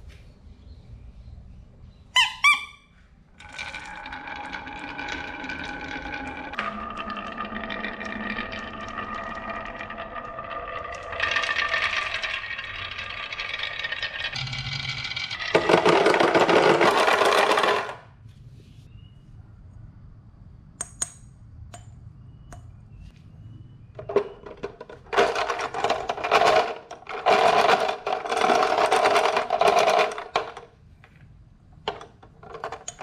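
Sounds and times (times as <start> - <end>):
marbles rolling down wooden run: 3.3 - 18.1, 24.0 - 31.1, 31.8 - 33.0
marbles clicking: 3.4 - 18.0, 24.0 - 30.7.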